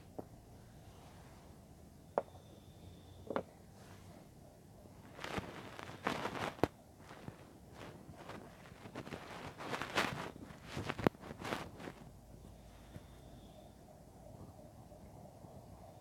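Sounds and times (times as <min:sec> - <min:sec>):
crackly rustling: 0:03.7 - 0:13.6.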